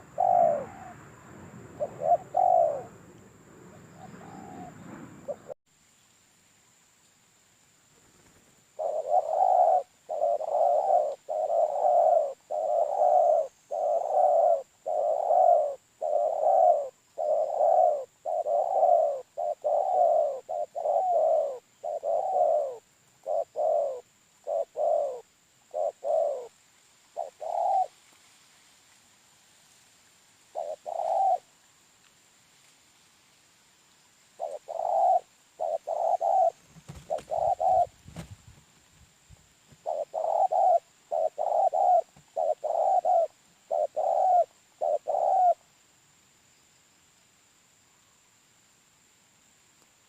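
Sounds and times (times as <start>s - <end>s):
dove cooing: 0.0s - 3.1s, 3.7s - 5.6s, 8.3s - 26.6s, 27.2s - 28.0s, 30.5s - 31.5s, 34.4s - 38.3s, 39.8s - 45.6s.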